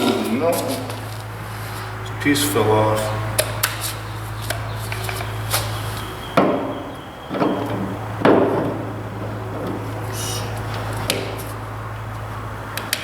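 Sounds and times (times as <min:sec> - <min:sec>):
steady low hum: 0:00.0 - 0:13.0
metal knocks and clanks: 0:03.2 - 0:12.0.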